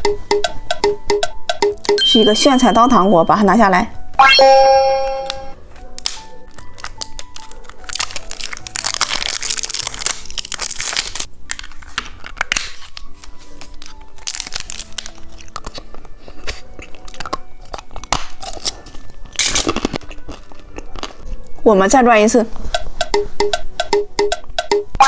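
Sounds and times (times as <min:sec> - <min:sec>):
light background music: 0:00.0 - 0:25.0
crunching and chewing candy: 0:05.8 - 0:21.7
candy wrapper crinkling and tearing: 0:05.9 - 0:21.6.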